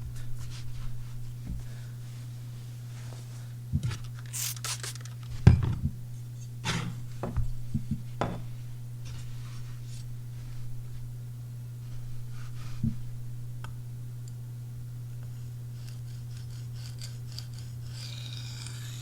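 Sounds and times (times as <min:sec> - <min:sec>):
hard drive hum: 0:05.2 - 0:15.8
knife and stone knocking: 0:08.2 - 0:08.5
knife scraping on sharpening stone: 0:15.8 - 0:19.0.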